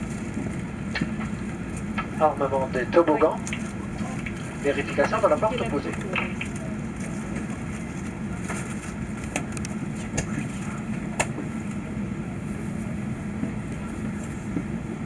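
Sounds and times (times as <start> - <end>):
aircraft cabin hum: 0.0 - 11.7
sharp clicks and knocks: 1.0 - 6.6.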